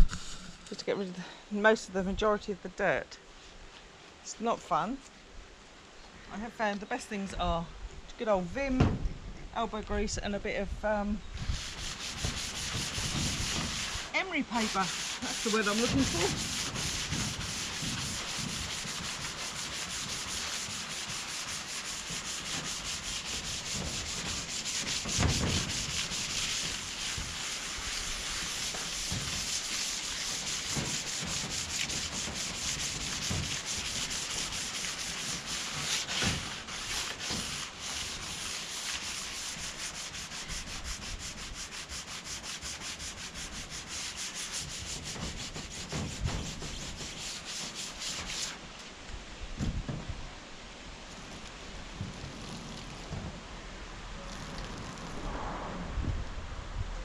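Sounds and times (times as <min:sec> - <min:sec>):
sandpaper rubbing on bodywork: 0:11.4 - 0:48.6.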